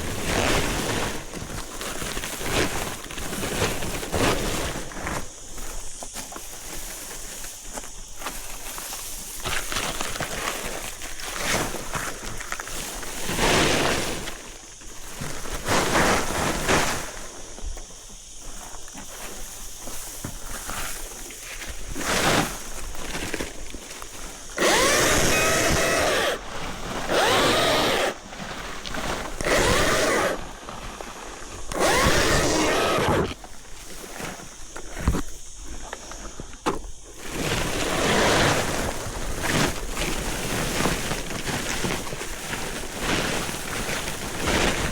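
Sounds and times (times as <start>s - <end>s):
rustling and handling noises: 0.0s - 44.9s
chainsaw cutting branches: 24.0s - 33.6s.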